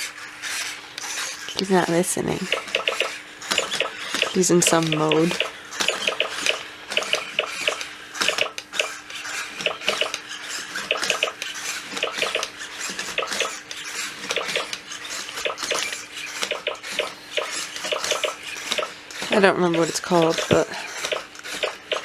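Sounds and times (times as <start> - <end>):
robot dog clicks and electronic blips: 2.5 - 9.0, 9.6 - 10.2, 10.9 - 11.4, 12.0 - 12.5, 13.1 - 13.6, 14.3 - 14.8, 15.4 - 18.9.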